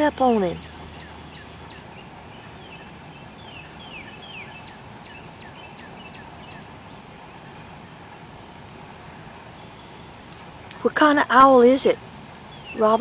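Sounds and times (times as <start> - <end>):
bird chirping: 0.0 - 7.7, 9.6 - 10.2, 12.5 - 13.0
outdoor background noise: 0.0 - 13.0.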